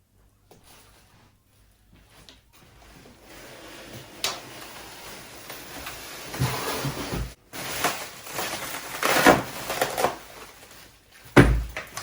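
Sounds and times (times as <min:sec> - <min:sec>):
packaging rustling and crinkling: 0:00.7 - 0:12.0.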